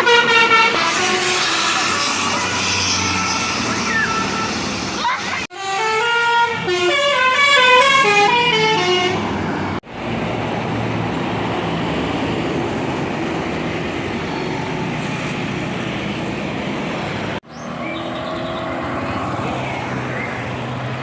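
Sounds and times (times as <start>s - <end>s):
bus horn playing a tune: 0.0s - 4.7s, 5.5s - 9.5s
passing vehicle engine and road noise: 0.0s - 21.0s.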